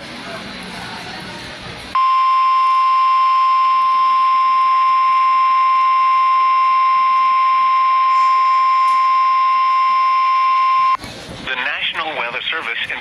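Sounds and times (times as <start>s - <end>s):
loud steady warning beep: 2.0s - 11.0s.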